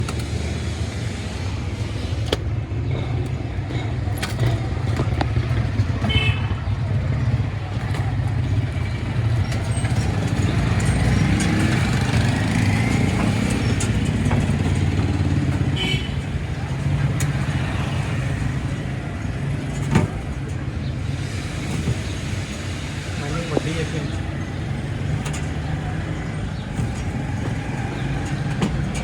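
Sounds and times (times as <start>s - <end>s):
low mechanical rumble: 0.0s - 29.0s
sharp clicks and knocks: 7.1s - 21.0s, 24.4s - 29.0s.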